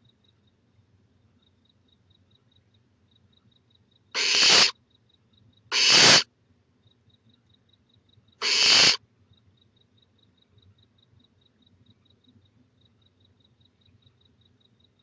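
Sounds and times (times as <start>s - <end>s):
owl chick hissing calls: 4.2s - 4.8s, 5.7s - 6.2s, 8.4s - 9.0s.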